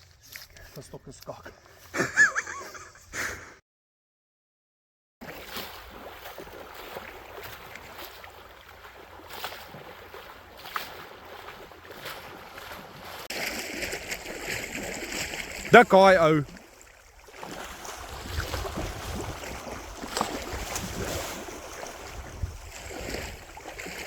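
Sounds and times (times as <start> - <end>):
wind: 0.0 - 3.6, 5.2 - 24.0
sea water at the shore: 5.2 - 24.0.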